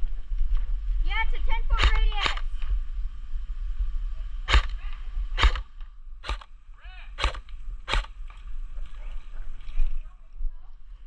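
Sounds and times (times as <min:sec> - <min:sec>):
airsoft gun shots: 0:01.8 - 0:02.5, 0:04.5 - 0:04.8, 0:05.4 - 0:06.6, 0:07.2 - 0:08.2.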